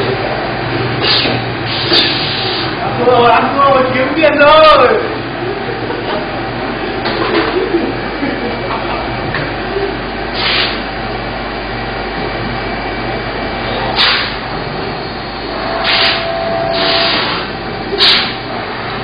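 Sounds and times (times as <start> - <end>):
machine hum: 0.0 - 19.0
short sharp hisses: 1.0 - 2.8, 10.4 - 10.8, 14.0 - 14.4, 15.8 - 18.4.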